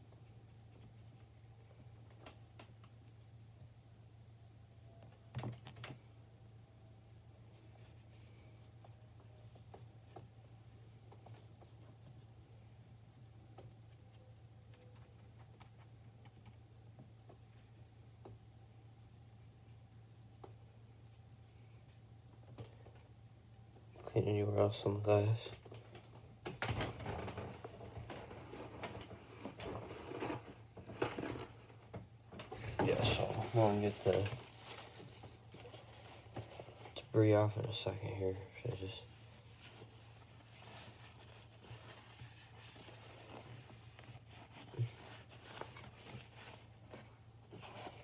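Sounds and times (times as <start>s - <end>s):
rubbing on phone screen: 32.8s - 48.0s.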